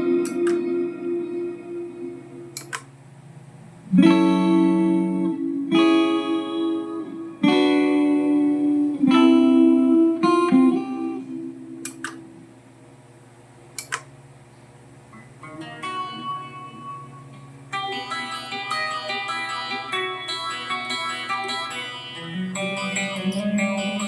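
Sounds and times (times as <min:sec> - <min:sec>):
guitar chords and notes: 0:00.0 - 0:03.0, 0:03.8 - 0:12.8, 0:15.1 - 0:24.0
sharp clicks: 0:02.5 - 0:02.9, 0:11.8 - 0:12.2, 0:13.8 - 0:14.1.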